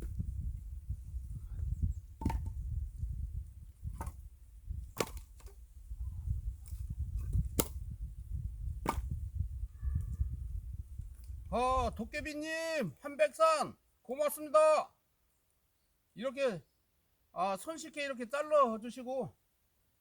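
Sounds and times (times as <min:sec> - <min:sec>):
axe chopping wood: 0:02.2 - 0:02.5, 0:03.9 - 0:04.2, 0:05.0 - 0:05.6, 0:07.2 - 0:07.8, 0:08.8 - 0:09.2.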